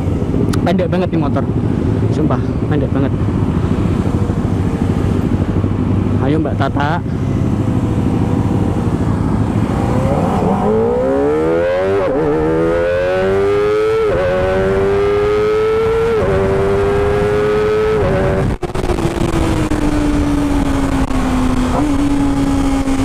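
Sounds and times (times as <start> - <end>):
motorcycle engine accelerating: 1.4 - 23.0
wind noise: 7.1 - 23.0.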